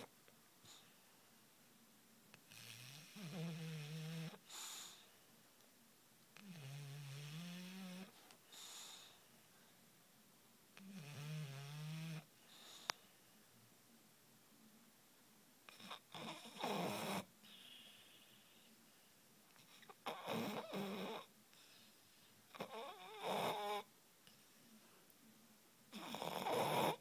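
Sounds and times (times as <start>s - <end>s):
dog snoring: 2.4s - 5.0s, 6.4s - 9.2s, 10.8s - 12.9s, 15.7s - 18.6s, 19.6s - 21.8s, 22.5s - 23.9s, 25.9s - 27.0s.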